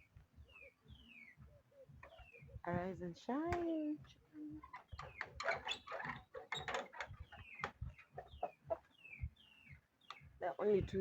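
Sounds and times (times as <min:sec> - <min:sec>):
chickens clucking: 0:04.8 - 0:09.4.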